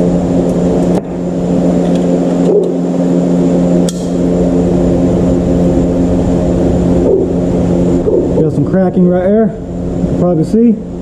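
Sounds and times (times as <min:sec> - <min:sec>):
loud mechanical hum: 0:00.0 - 0:11.0.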